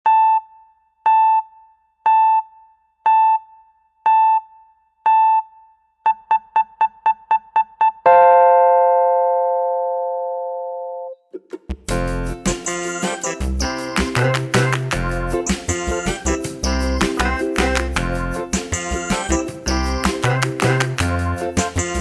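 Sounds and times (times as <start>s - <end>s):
electronic countdown beeps: 0.1s - 8.8s.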